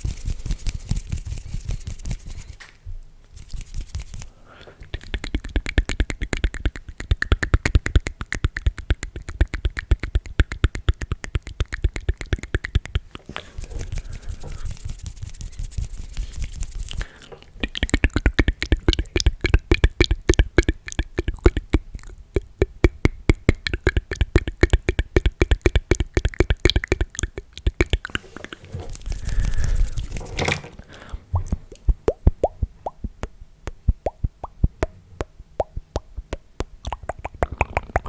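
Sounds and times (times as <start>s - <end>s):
tongue and lip clicks: 3.6s - 30.1s, 31.0s - 38.0s
hollow mouth pops: 4.7s - 14.6s, 16.8s - 30.2s, 31.0s - 38.0s
breathy noise: 28.1s - 31.3s.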